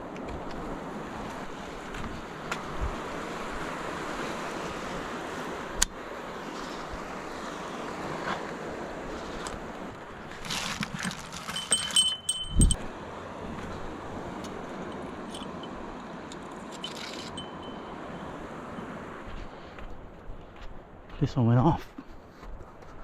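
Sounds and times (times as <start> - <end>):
surf: 0.0 - 12.4
fishing rod bell jingling: 10.5 - 12.9, 14.9 - 18.9.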